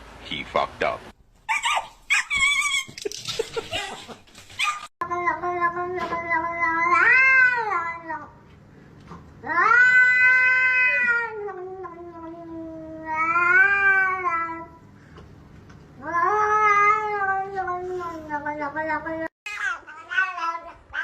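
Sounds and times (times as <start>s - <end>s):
cat yowling: 4.6s - 8.2s, 9.4s - 14.7s, 16.0s - 21.0s.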